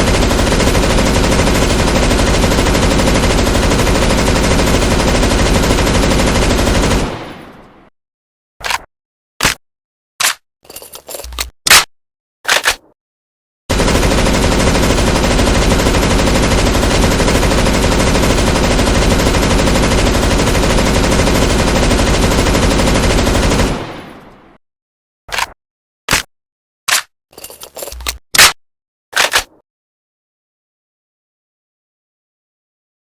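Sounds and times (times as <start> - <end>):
machine gun automatic fire: 0.0 - 7.5, 13.7 - 24.2
sharp mechanical clacks: 29.2 - 29.6.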